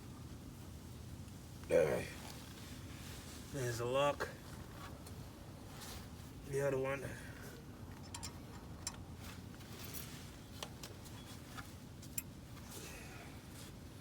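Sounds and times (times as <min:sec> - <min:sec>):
small metal hardware clicking: 0:08.0 - 0:09.0.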